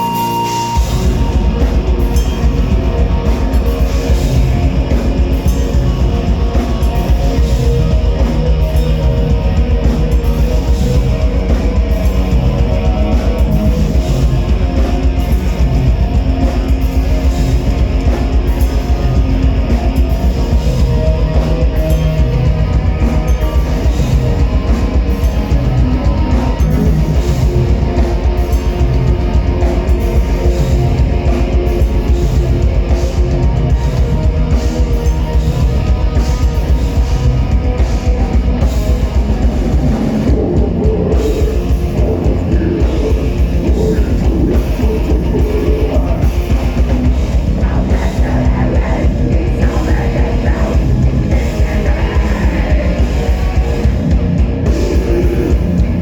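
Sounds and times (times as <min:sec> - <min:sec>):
heavy metal band playing live: 0:00.0 - 0:56.0.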